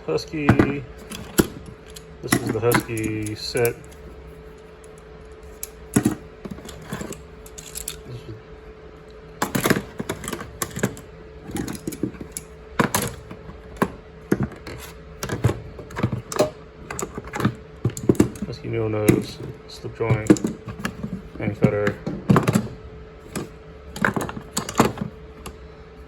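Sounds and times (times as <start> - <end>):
faint steady hum: 0.0 - 26.0
metal pliers clinking: 6.6 - 8.0.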